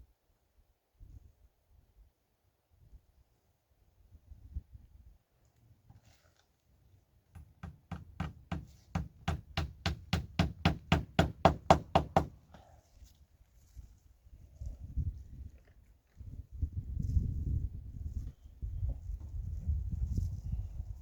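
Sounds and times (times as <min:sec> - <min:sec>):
hammer striking nail into wood: 0:07.4 - 0:12.4.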